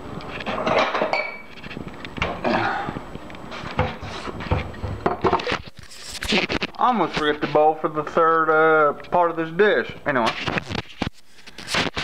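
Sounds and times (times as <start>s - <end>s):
bowls clinking together: 0.7s - 1.5s.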